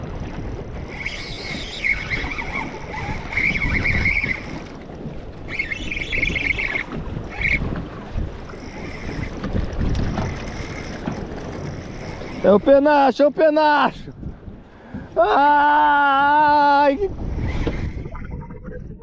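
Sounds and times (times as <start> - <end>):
fishing reel whirring: 0.0 - 13.2, 16.8 - 18.0
water against a boat: 0.0 - 19.0
wind: 0.0 - 19.0.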